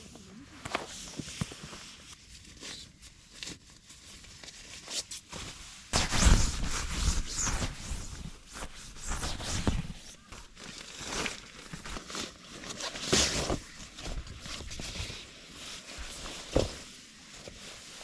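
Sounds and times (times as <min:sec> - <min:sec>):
rustling handling noises: 0:00.1 - 0:18.0.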